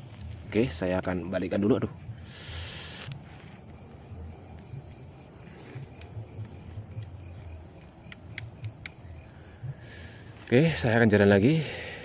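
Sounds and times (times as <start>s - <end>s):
crickets and insects chirping: 0.0s - 12.0s
sharp clicks: 6.0s - 9.1s.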